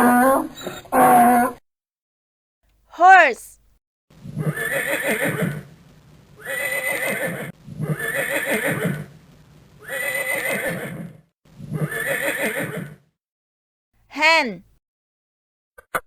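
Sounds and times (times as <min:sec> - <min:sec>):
horse neighing: 0:04.4 - 0:05.6, 0:06.4 - 0:09.0, 0:09.8 - 0:11.0, 0:11.7 - 0:13.0.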